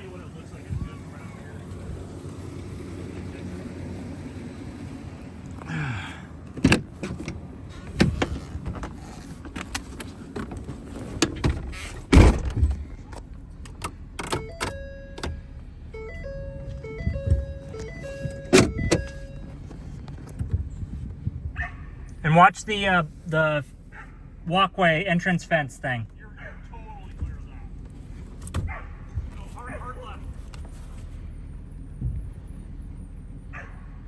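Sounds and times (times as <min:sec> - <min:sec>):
two-pitch electronic beeps: 0:16.0 - 0:19.4.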